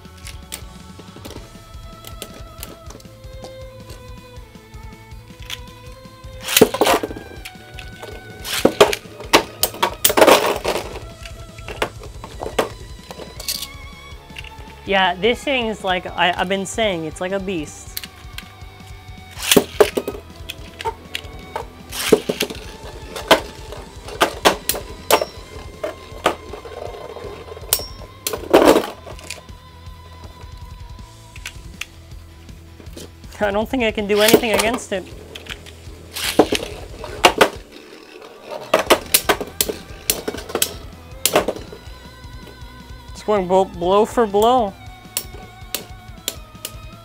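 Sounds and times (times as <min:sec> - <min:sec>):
background music: 0:00.0 - 0:47.0
spinning tops clacking: 0:06.4 - 0:11.0, 0:19.3 - 0:29.4, 0:34.1 - 0:41.7
rattle of collisions: 0:06.5 - 0:11.1, 0:19.3 - 0:29.4, 0:34.2 - 0:41.8.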